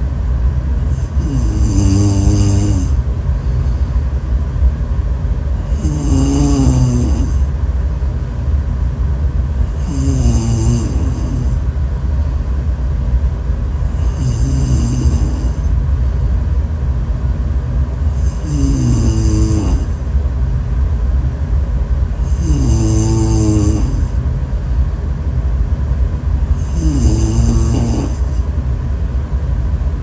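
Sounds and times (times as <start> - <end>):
steady low rumble: 0.0 - 30.0
person snoring: 0.9 - 3.9, 5.6 - 7.5, 9.7 - 11.6, 13.9 - 15.7, 18.1 - 20.0, 22.2 - 24.2, 26.5 - 28.4.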